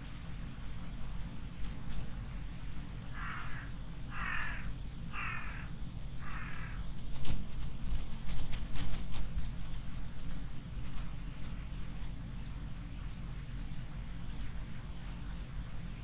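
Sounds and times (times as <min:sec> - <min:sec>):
crow cawing: 0:03.1 - 0:06.8.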